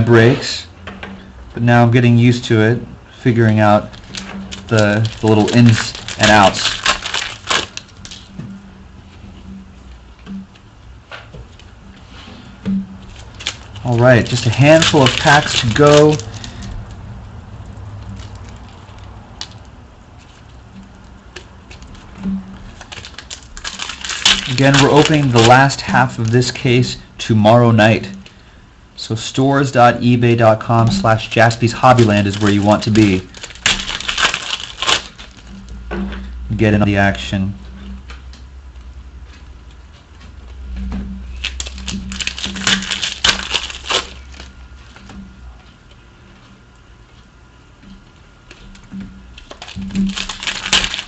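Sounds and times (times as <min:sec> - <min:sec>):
low steady hum: 0:00.0 - 0:51.0
cards crinkling and clicking: 0:03.6 - 0:08.3, 0:13.0 - 0:17.0, 0:18.0 - 0:27.0, 0:31.0 - 0:35.8, 0:41.3 - 0:45.2, 0:48.5 - 0:51.0.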